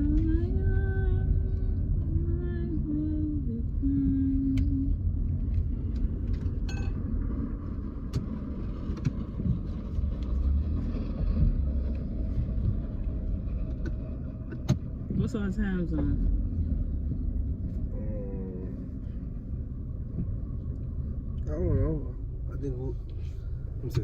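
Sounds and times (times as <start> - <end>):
car road noise rumble: 0.0 - 24.0.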